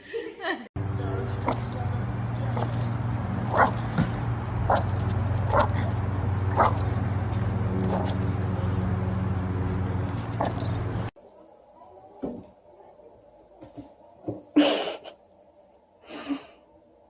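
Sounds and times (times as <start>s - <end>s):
low hum: 0.8s - 11.1s
dog barking: 3.4s - 4.0s, 4.6s - 7.1s, 7.8s - 8.5s, 10.1s - 10.8s.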